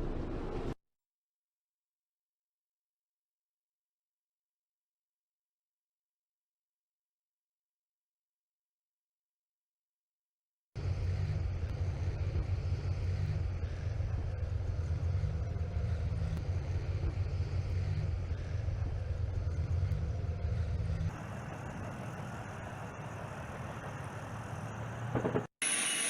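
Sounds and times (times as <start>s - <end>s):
loud low engine rumble: 10.8s - 25.5s
hissy background: 21.1s - 25.1s.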